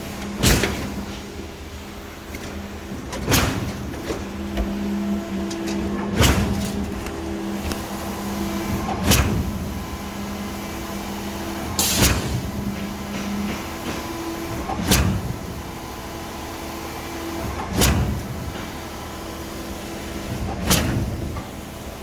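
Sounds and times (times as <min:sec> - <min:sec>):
steady machine hum: 0:00.0 - 0:22.0
concrete pump stroke clunks: 0:02.4 - 0:08.2.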